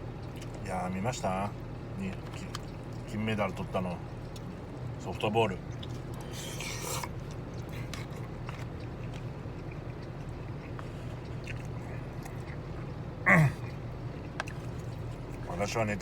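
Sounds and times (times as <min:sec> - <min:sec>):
close chewing noises: 0:00.0 - 0:16.0
steady low hum: 0:00.0 - 0:16.0
short vocal sound: 0:13.3 - 0:13.6.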